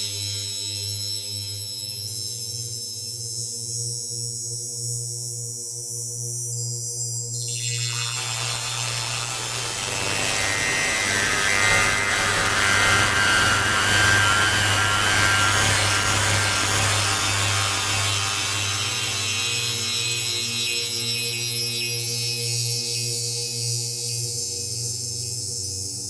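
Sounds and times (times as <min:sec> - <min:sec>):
synthesizer drone: 0:07.5 - 0:20.7
dense rasping noise: 0:08.0 - 0:19.8.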